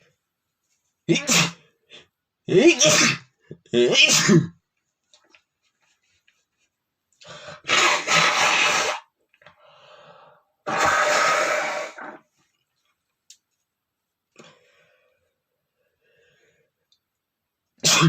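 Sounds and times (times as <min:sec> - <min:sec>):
man sneezing: 0:01.1 - 0:01.7, 0:02.7 - 0:03.3, 0:03.9 - 0:04.6, 0:17.8 - 0:18.0
heavy breathing: 0:07.2 - 0:07.7, 0:09.5 - 0:10.5.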